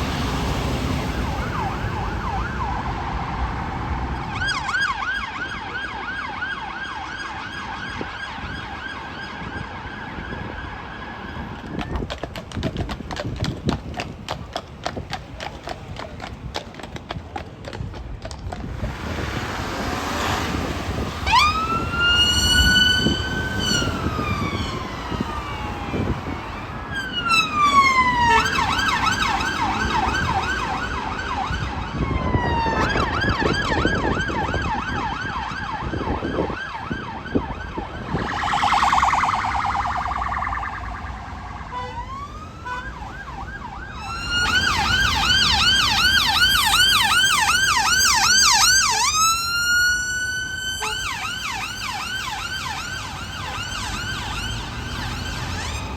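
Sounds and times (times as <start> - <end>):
road noise: 0.0 - 55.9
electronic siren wailing and yelping: 21.0 - 55.9
harsh horn blast: 27.0 - 30.3, 41.7 - 42.0, 50.8 - 51.3.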